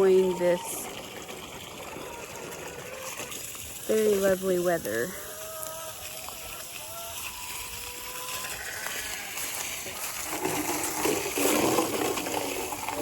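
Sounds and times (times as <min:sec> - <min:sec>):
water running and splashing: 0:00.0 - 0:13.0.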